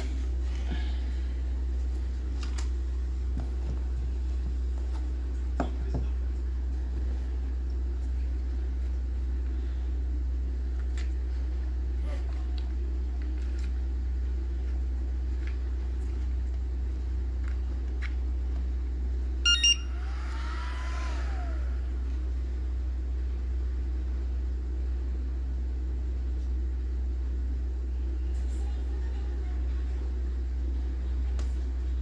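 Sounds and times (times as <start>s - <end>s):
steady low hum: 0.0s - 32.0s
short electronic beeps: 19.4s - 19.9s.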